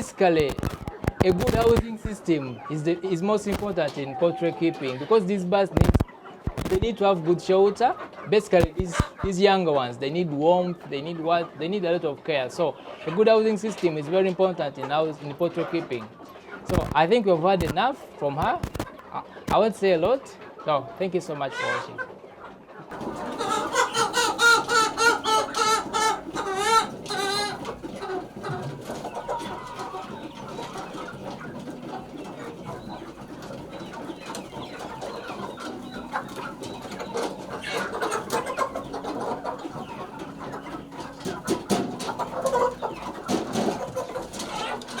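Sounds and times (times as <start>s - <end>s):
chickens clucking: 0.0s - 45.0s.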